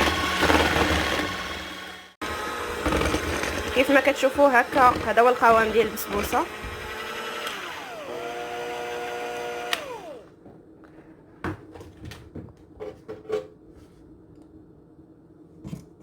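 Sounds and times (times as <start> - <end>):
electric mixer motor running: 0.0 - 10.3.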